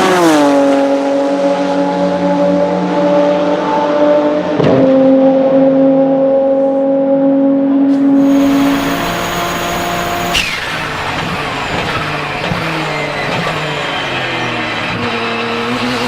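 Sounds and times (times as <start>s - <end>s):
race car engine at high revs: 0.0s - 16.0s
rushing hiss: 8.2s - 13.8s
sharp click: 10.3s - 13.5s.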